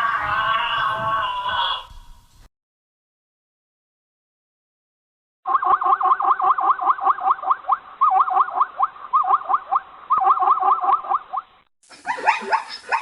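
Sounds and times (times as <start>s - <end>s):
animal chattering call: 5.6s - 13.0s.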